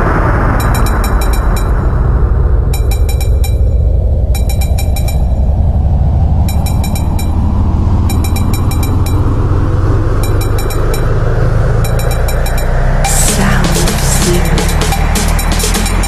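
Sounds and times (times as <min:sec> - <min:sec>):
rising noise sweep: 0:00.0 - 0:16.0
sustained heavy bass: 0:00.0 - 0:16.0
rapid high ticking percussion: 0:00.6 - 0:01.9, 0:02.7 - 0:03.8, 0:04.4 - 0:05.5, 0:06.4 - 0:07.5, 0:08.1 - 0:09.4, 0:10.1 - 0:11.2, 0:11.8 - 0:16.0.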